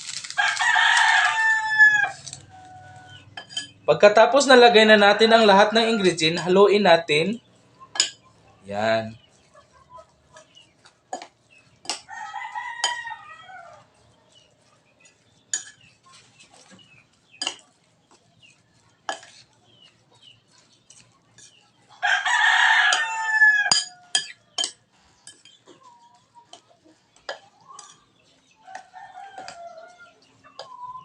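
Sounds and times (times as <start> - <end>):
rooster crowing: 0.4 - 3.3, 12.1 - 13.8, 22.0 - 24.2, 28.6 - 31.0
spoon clinking against bowl: 3.3 - 3.9, 7.9 - 8.3, 15.5 - 15.9, 17.4 - 17.6, 19.1 - 19.4, 23.7 - 25.8.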